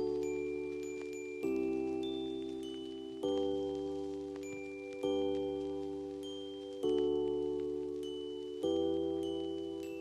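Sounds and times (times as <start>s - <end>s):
gentle held chords: 0.0s - 10.0s.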